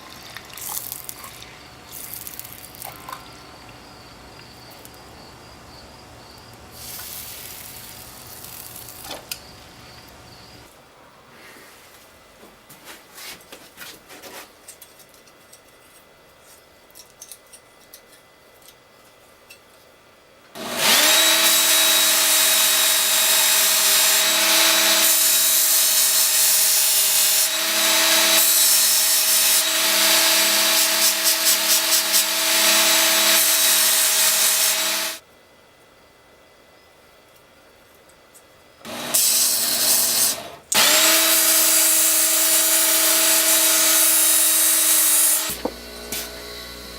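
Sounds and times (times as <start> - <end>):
electric power tool grinding: 20.6 - 35.2, 38.8 - 46.9.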